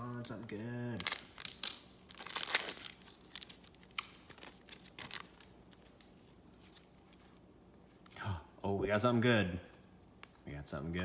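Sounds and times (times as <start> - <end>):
wrapper being torn open: 1.0 - 6.1
cards and wrapper rustling: 1.0 - 7.4.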